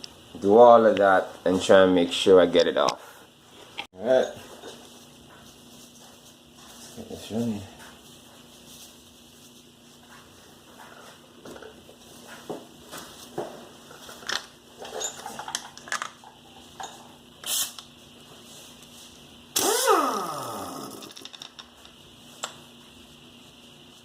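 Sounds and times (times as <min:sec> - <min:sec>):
power tool motor winding down: 0:19.6 - 0:21.2.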